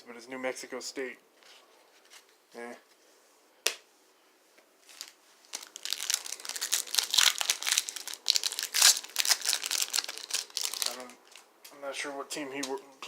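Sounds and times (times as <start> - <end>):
wrapper tearing and crackling: 4.9 - 11.5.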